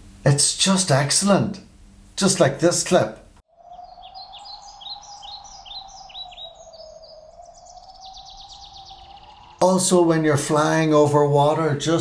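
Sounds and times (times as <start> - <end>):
small birds chirping: 3.5 - 10.2.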